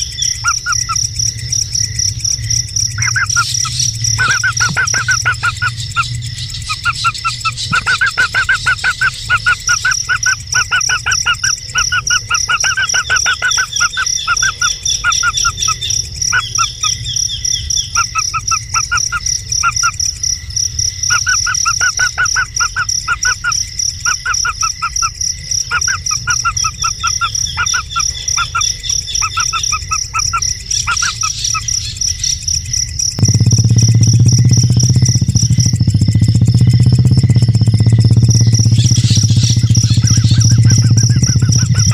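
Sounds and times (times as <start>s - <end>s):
bird chirping: 0.0s - 1.6s, 2.2s - 20.0s, 21.1s - 35.7s, 37.3s - 41.9s
high-pitched insect drone: 0.0s - 41.9s.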